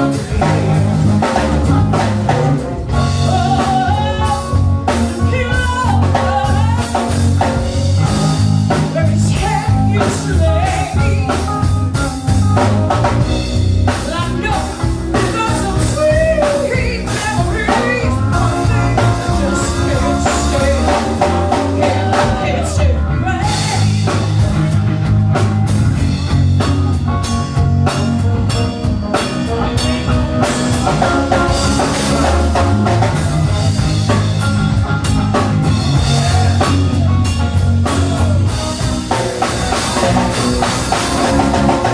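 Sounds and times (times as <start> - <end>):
singer: 0.0 - 11.7, 13.9 - 24.3, 35.8 - 41.9
blues-rock band: 0.0 - 41.9.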